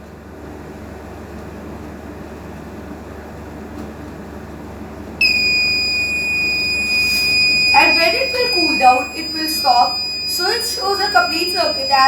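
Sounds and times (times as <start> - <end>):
high-pitched buzzer tone: 5.2 - 12.0.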